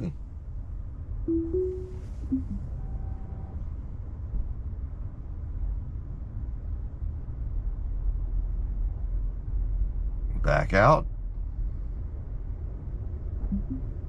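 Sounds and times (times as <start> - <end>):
falling two-note electronic chime: 1.3 - 2.7.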